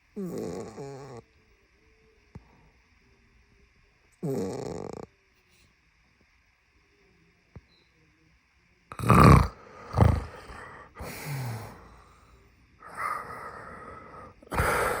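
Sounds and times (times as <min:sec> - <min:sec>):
man snoring loudly: 0:00.2 - 0:01.2, 0:04.2 - 0:05.1, 0:08.9 - 0:12.1, 0:12.8 - 0:15.0
sleeping breaths: 0:08.9 - 0:15.0.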